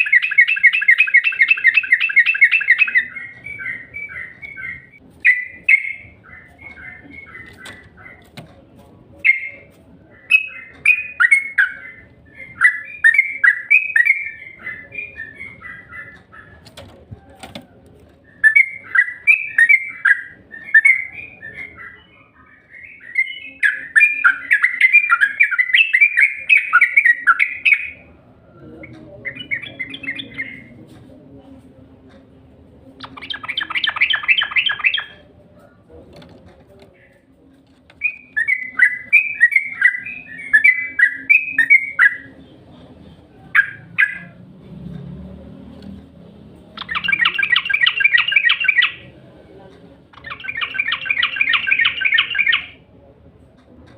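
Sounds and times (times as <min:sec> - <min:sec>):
bird chattering: 0:00.0 - 0:17.0, 0:29.2 - 0:30.7, 0:32.9 - 0:35.9, 0:37.9 - 0:42.7, 0:46.7 - 0:49.2, 0:50.0 - 0:52.9
bird chirping: 0:00.0 - 0:17.0, 0:18.2 - 0:28.1, 0:29.0 - 0:30.8, 0:32.9 - 0:35.7, 0:37.9 - 0:45.2, 0:46.7 - 0:49.2, 0:50.0 - 0:52.8.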